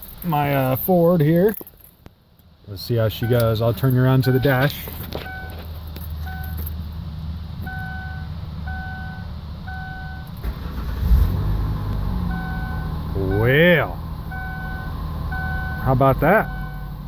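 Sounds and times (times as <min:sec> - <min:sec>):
car engine idling: 0:01.9 - 0:17.0
dashboard chime beeping: 0:04.2 - 0:04.7.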